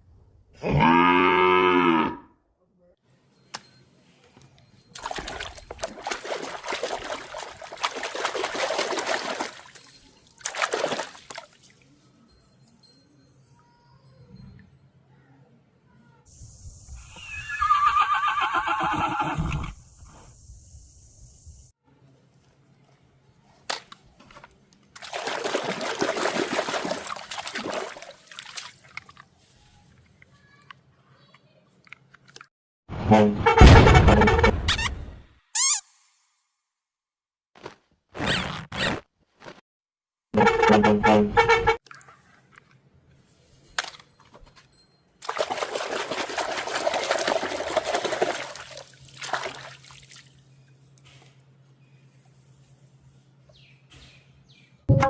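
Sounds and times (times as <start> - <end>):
cow mooing: 0.6 - 2.4
water running and splashing: 5.0 - 11.8, 25.0 - 29.3, 45.2 - 50.4.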